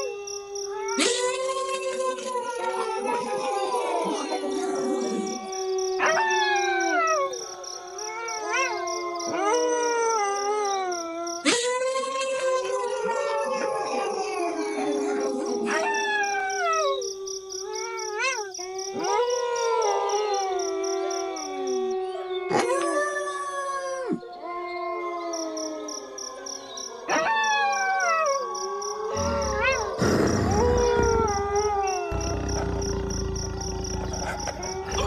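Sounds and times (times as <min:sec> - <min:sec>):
wolves howling: 0:00.0 - 0:01.0, 0:02.2 - 0:10.9, 0:17.7 - 0:35.0.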